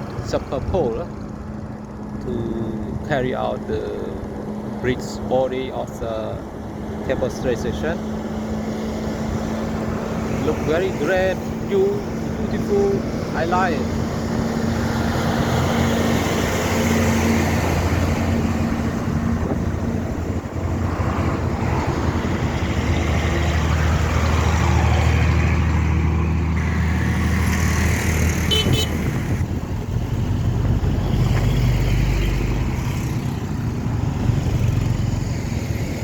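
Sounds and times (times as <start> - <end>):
traffic rumbling past: 0.0 - 36.0
short horn beep: 28.5 - 29.0.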